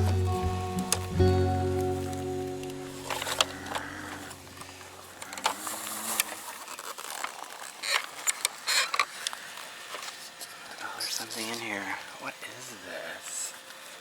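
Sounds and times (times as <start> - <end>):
toy digger scraping loose dirt: 3.1 - 9.4.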